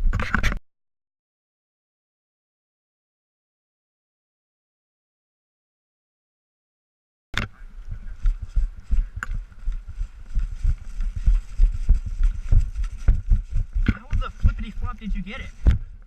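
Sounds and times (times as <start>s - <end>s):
low handling thumps: 7.9s - 16.0s.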